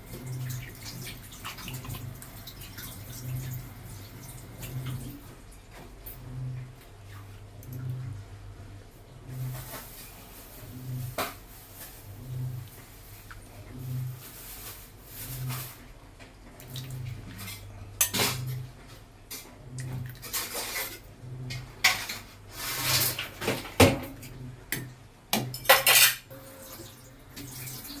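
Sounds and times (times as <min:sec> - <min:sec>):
metal utensils clinking on dishes: 0:25.4 - 0:26.9.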